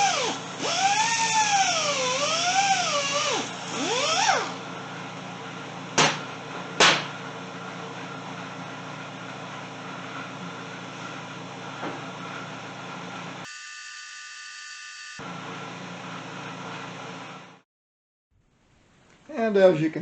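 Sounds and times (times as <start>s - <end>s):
angle grinder on metal: 0.0s - 4.6s.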